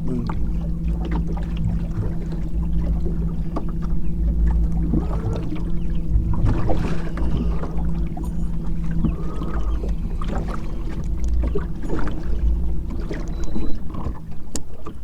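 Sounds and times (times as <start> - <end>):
boat motor humming: 0.0 - 15.0.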